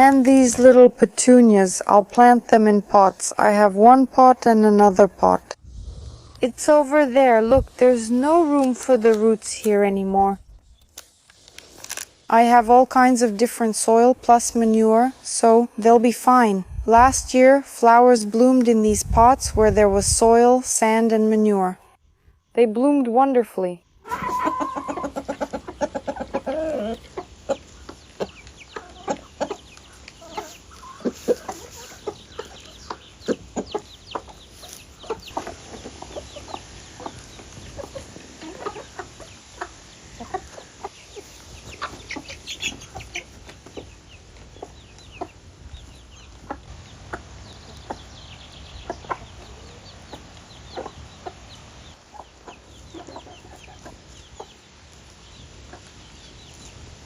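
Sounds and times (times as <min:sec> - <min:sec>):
chickens clucking: 0:24.0 - 0:57.0.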